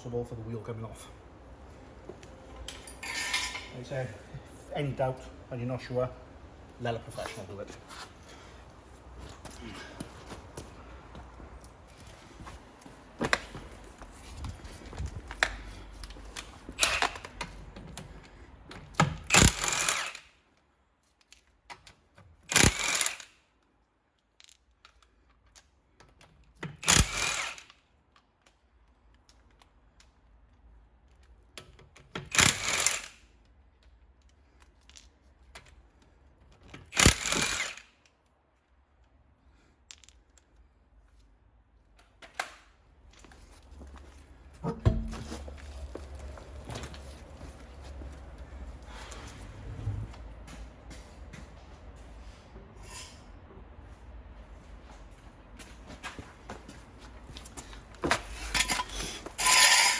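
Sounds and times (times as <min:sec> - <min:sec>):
clatter of tools: 0:02.7 - 0:03.8, 0:58.1 - 0:59.9
power tool bursts on wheel nuts: 0:16.8 - 0:17.3, 0:19.1 - 0:20.4, 0:22.5 - 0:23.4, 0:26.7 - 0:27.8, 0:32.2 - 0:33.3, 0:36.8 - 0:38.0, 0:58.3 - 0:59.9.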